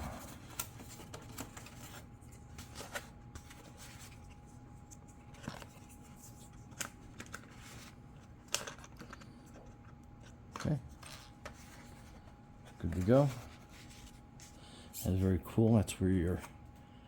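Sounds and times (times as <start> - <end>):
faint steady hum: 0.0 - 17.0
plastic parts clicking and rustling: 5.1 - 11.8.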